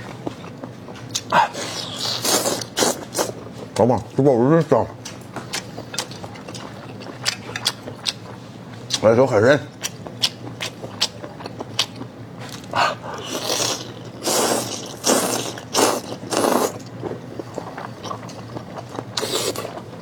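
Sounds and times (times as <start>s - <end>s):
wet slurping and chewing: 0.3s - 3.5s, 9.8s - 20.0s.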